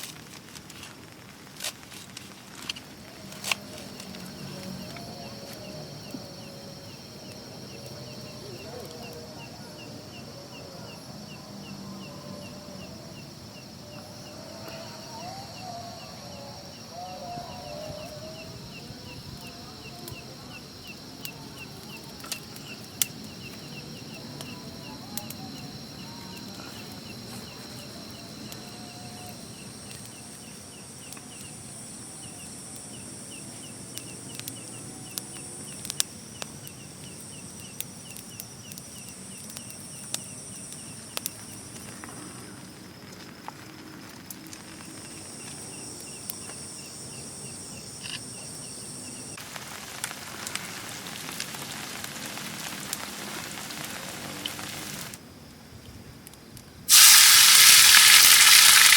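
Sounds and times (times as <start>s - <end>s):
ticking insect chirp: 0.0s - 55.3s, 56.2s - 58.9s
high-pitched insect drone: 56.9s - 58.9s.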